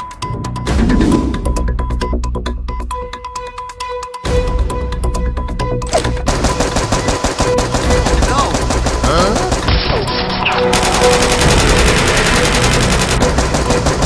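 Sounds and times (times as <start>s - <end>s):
background music: 0.0s - 14.0s
machine gun fire: 6.3s - 9.8s, 10.7s - 14.0s.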